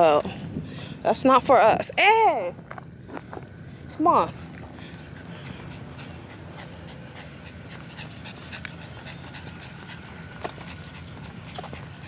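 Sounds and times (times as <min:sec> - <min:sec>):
dog panting: 0:04.8 - 0:12.0.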